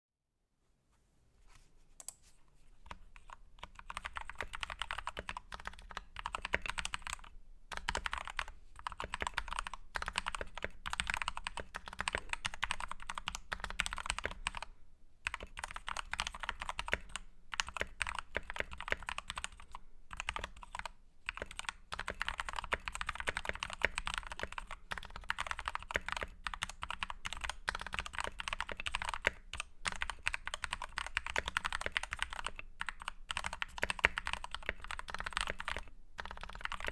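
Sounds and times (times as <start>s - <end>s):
mechanical keyboard typing: 2.9s - 14.7s, 15.3s - 36.9s.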